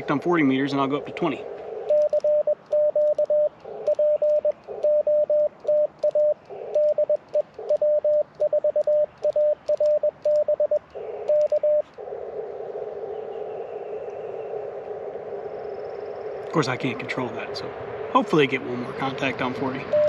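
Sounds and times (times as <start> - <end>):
receiver hiss: 0.0 - 17.4
morse code tone: 1.8 - 11.8.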